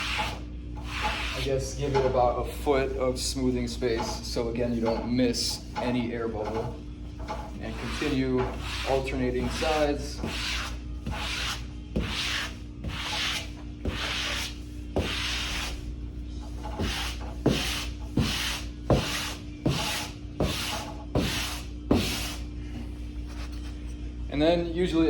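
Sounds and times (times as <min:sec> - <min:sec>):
smoother rubbing wallpaper: 0:00.0 - 0:22.5
steady low hum: 0:00.0 - 0:25.0.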